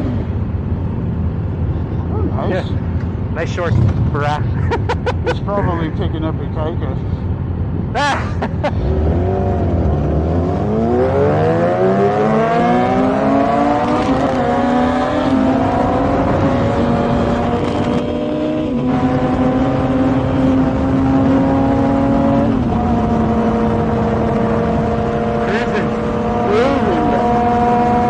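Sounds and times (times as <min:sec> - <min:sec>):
motorcycle engine droning: 0:08.9 - 0:28.0.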